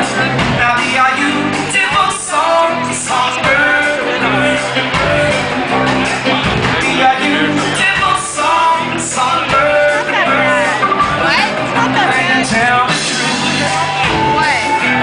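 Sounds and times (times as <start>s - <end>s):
bass guitar: 0.0s - 15.0s
drums: 0.0s - 15.0s
electric guitar: 0.0s - 15.0s
keyboards: 0.0s - 15.0s.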